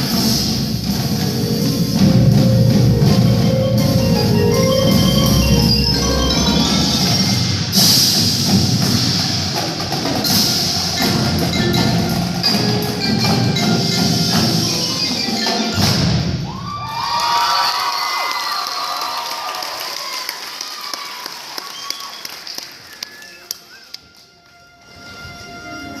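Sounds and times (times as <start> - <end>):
mallet keyboards: 0.1 - 8.0, 9.9 - 16.4
chimes: 1.9 - 7.6
wood block: 10.1 - 16.2
crowd cheering and shouting: 16.4 - 21.4.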